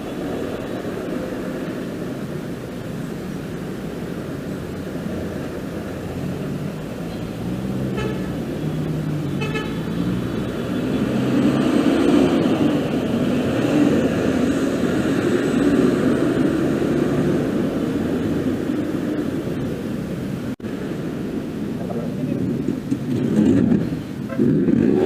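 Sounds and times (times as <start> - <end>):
horn toots: 7.8 - 8.7, 9.3 - 10.0.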